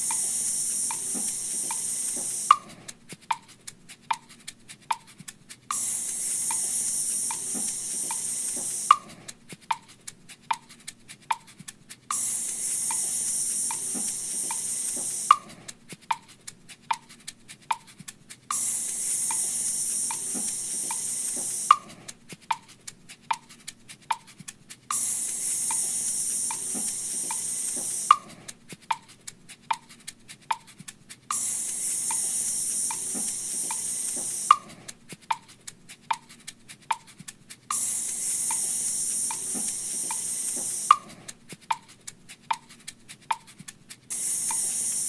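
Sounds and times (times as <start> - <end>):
steady hissing noise: 0.0 - 2.6, 5.7 - 9.0, 12.1 - 15.4, 18.5 - 21.8, 24.9 - 28.2, 31.3 - 34.6, 37.7 - 41.1, 44.1 - 45.0
metronome clicks: 0.0 - 3.5, 4.1 - 12.3, 12.9 - 18.7, 19.3 - 21.9, 22.5 - 22.7, 23.3 - 45.0.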